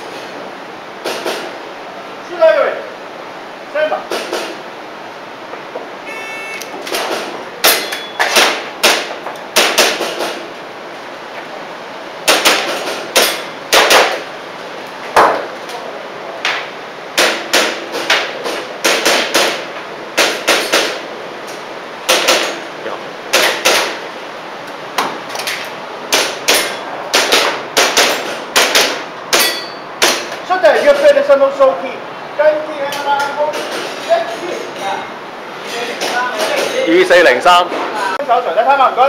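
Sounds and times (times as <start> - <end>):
airsoft pistol shots: 12.3 - 14.2, 26.1 - 30.3.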